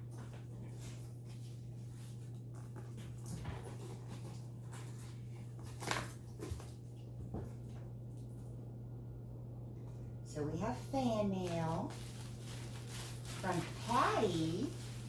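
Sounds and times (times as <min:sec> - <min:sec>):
steady low hum: 0:00.0 - 0:15.0
monkeys rustling a package: 0:11.1 - 0:15.0.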